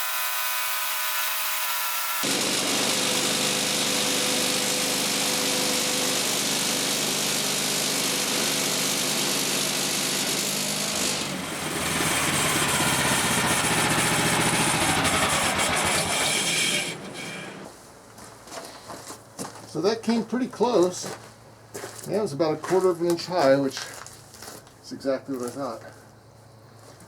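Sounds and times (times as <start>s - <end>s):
band sawmill cutting log: 0.0s - 17.8s.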